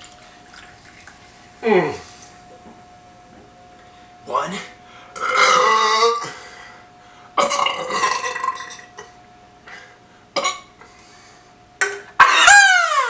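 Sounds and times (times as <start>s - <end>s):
man burping loudly: 1.6s - 2.1s, 5.2s - 6.4s, 7.4s - 8.9s.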